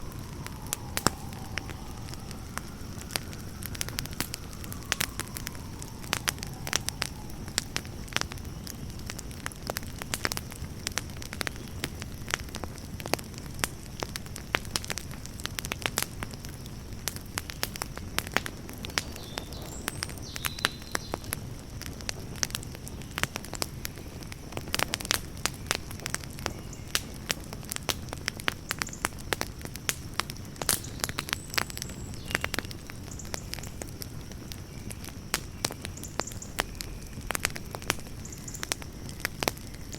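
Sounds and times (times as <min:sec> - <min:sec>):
campfire crackling and popping: 0:00.0 - 0:39.9.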